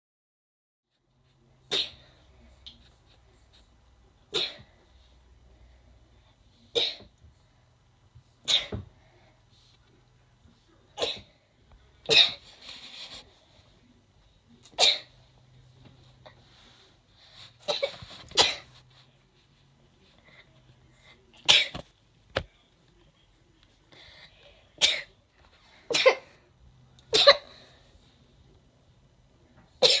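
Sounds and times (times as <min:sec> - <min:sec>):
person sneezing: 0:25.9 - 0:26.4.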